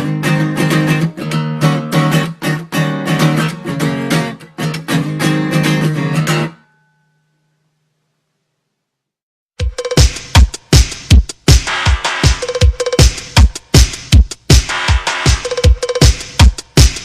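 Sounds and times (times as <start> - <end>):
acoustic guitar strumming: 0.0 - 7.1.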